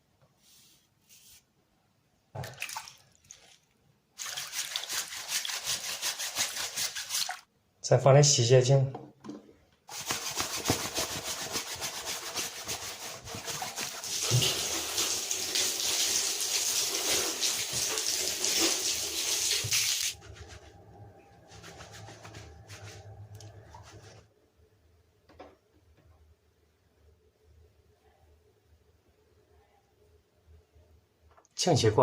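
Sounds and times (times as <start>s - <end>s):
rubbing and handling sounds: 0.3s - 1.6s, 3.2s - 7.5s, 9.9s - 15.2s, 16.8s - 24.3s
tap water running: 12.7s - 20.6s.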